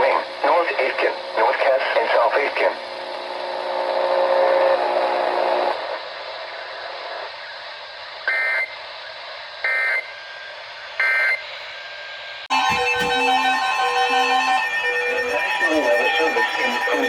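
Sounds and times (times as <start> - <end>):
radio static hiss: 0.0 - 11.8, 12.5 - 17.0
loud steady tones: 0.0 - 17.0
two-tone data bursts: 12.5 - 17.0.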